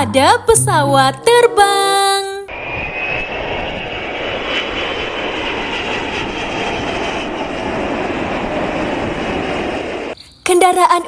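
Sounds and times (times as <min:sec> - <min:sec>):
airplane engine roar with whine: 0:02.5 - 0:10.2.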